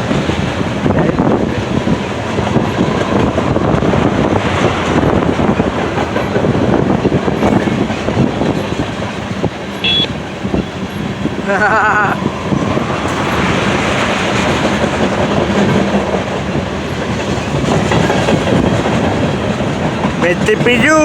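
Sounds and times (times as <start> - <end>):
train wheels clattering over rails: 0.0 - 21.0
high wheel squeal: 9.8 - 14.5.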